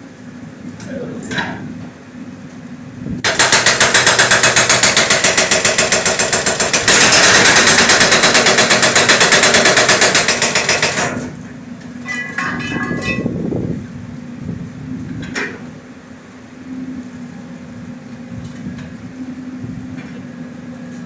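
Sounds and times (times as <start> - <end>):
jackhammer pounding concrete: 3.2 - 11.4.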